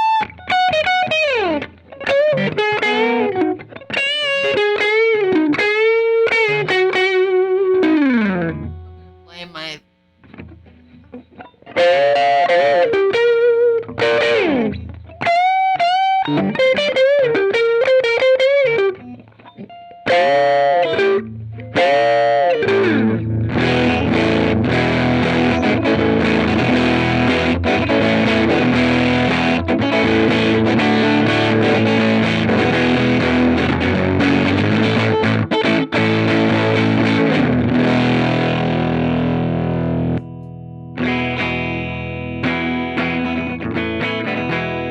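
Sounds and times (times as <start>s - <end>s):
electric guitar lead notes: 19.6s - 44.9s.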